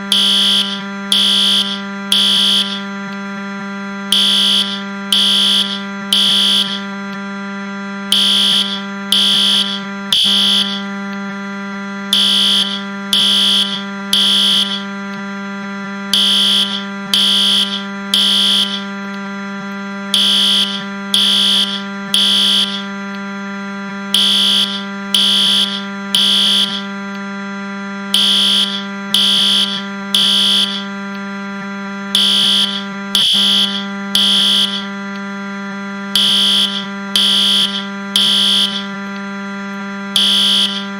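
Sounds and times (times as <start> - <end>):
fire alarm beeping: 0.0 - 40.9
low harsh buzz: 0.0 - 40.9.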